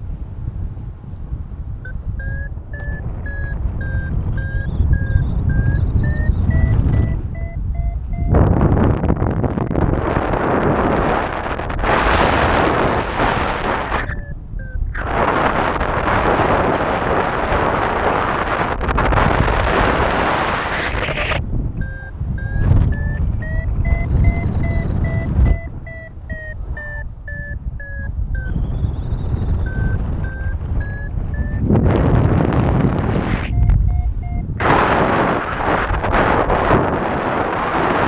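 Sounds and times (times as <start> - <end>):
wind buffeting microphone: 0.0 - 38.0
variometer beeping: 1.8 - 15.6, 20.9 - 36.6.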